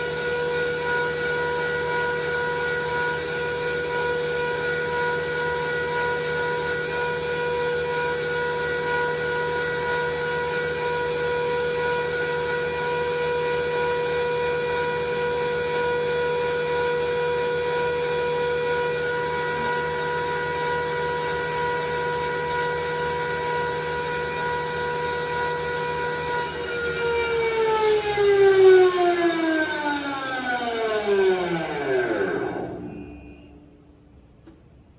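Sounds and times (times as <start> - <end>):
thickness planer whining: 0.0 - 33.6.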